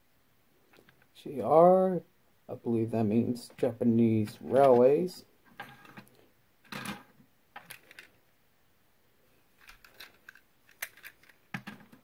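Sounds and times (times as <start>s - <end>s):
small parts clicking: 7.6s - 8.2s, 9.6s - 12.0s.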